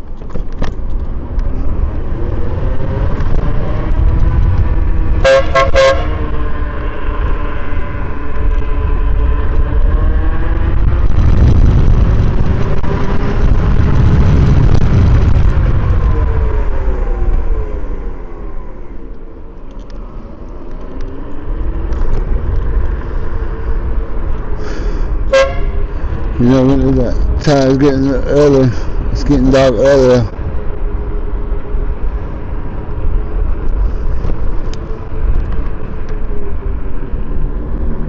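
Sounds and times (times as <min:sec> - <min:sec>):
wind and road rumble: 0:00.0 - 0:38.0
electric air horn blast: 0:05.2 - 0:06.3, 0:25.3 - 0:25.9.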